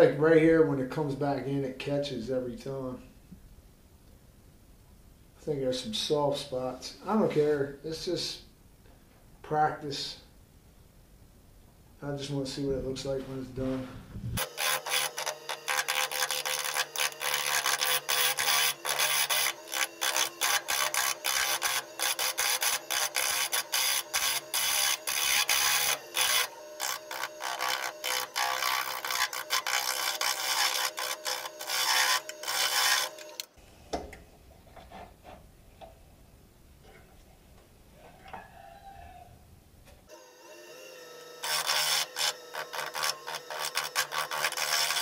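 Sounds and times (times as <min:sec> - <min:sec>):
turning tool scraping wood: 0:12.7 - 0:33.5, 0:41.2 - 0:45.0
lathe humming: 0:14.4 - 0:33.5, 0:40.1 - 0:45.0.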